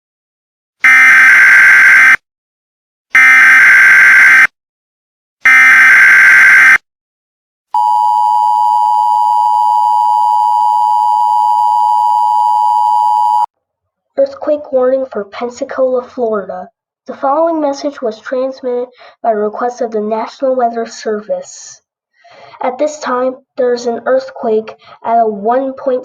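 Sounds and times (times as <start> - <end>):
two-tone attention signal: 7.8 - 13.5.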